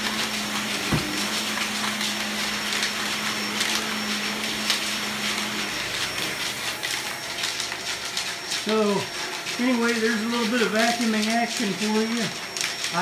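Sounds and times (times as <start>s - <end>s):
vacuum cleaner running on carpet: 0.0s - 13.0s.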